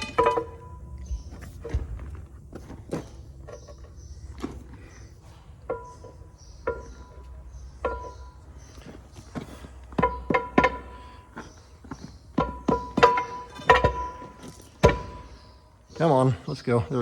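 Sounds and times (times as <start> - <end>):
metal clanking on steel: 0.0 - 2.1, 2.8 - 16.0.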